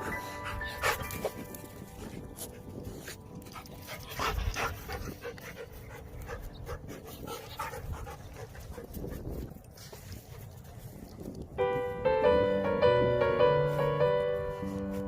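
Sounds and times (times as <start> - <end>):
dog panting: 0.0 - 10.7.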